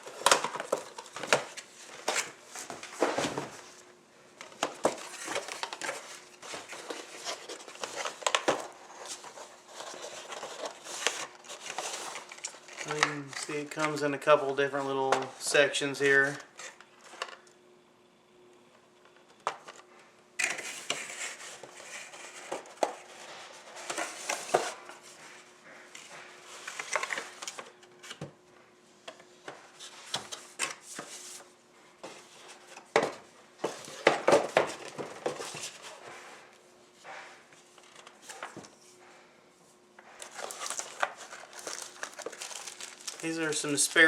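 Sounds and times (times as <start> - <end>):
plastic packaging rustling: 0.0 - 3.8, 4.4 - 15.2, 40.2 - 44.0
faint steady hum: 0.0 - 44.0.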